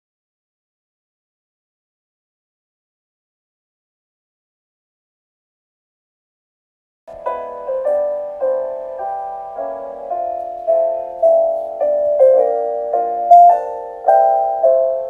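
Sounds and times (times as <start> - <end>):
gentle piano piece: 7.1 - 15.0.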